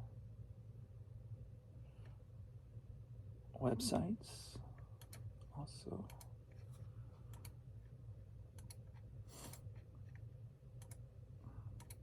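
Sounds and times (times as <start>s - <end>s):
low steady hum: 0.0s - 12.0s
computer mouse clicks: 5.0s - 5.3s, 7.3s - 7.6s, 8.5s - 10.2s, 10.8s - 11.0s, 11.7s - 12.0s.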